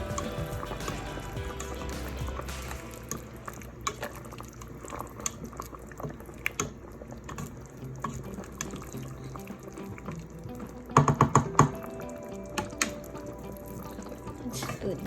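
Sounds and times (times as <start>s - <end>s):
broth bubbling in a pot: 0.0s - 15.0s.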